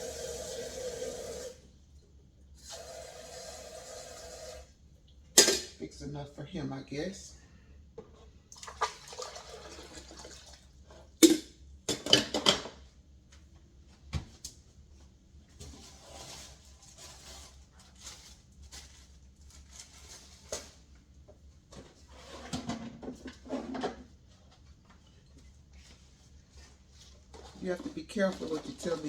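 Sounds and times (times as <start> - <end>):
dishes clinking and clattering: 5.4 - 5.8, 11.2 - 12.8, 22.3 - 24.1
soft rustling and handling: 13.3 - 22.3, 24.2 - 29.0.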